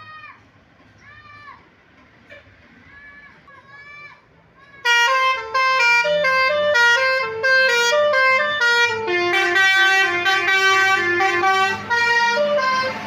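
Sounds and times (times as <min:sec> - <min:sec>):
multi-tone bus horn melody: 0:04.8 - 0:13.0.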